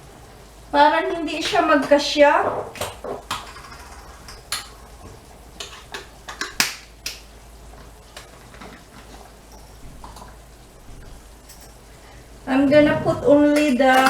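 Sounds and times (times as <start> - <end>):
kitchen utensils clicking: 1.4 - 6.8, 11.4 - 11.8, 12.6 - 14.0.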